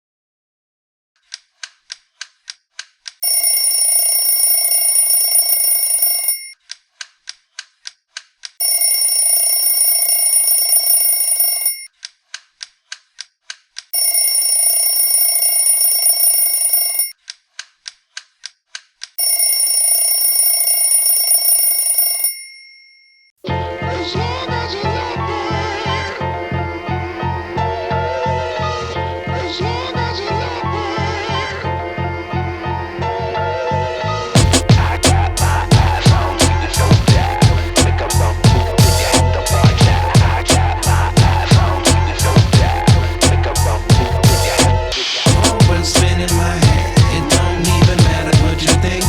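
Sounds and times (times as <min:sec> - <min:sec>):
alarm clock bell ringing: 0:03.2 - 0:06.6, 0:08.6 - 0:11.9, 0:14.0 - 0:17.1, 0:19.2 - 0:23.3
alarm clock ticking: 0:03.2 - 0:06.6, 0:08.6 - 0:11.9, 0:14.0 - 0:17.1, 0:19.2 - 0:22.4.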